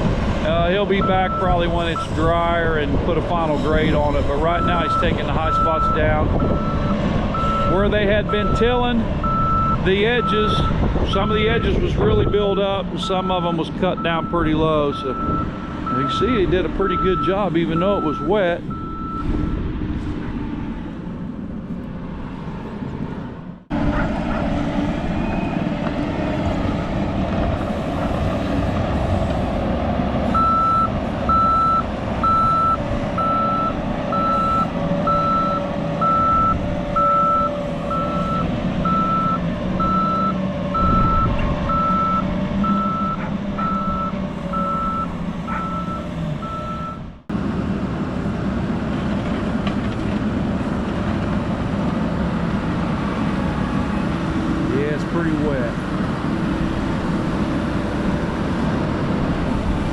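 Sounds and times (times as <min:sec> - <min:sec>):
skid steer engine under load: 0:00.0 - 0:59.9
backup alarm beeping: 0:01.0 - 0:02.2, 0:04.6 - 0:12.5, 0:16.9 - 0:19.3, 0:30.4 - 0:47.1.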